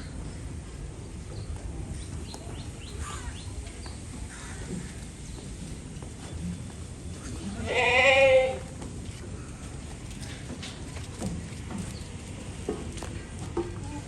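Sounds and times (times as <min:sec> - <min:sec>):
goat bleating: 0:07.4 - 0:08.7.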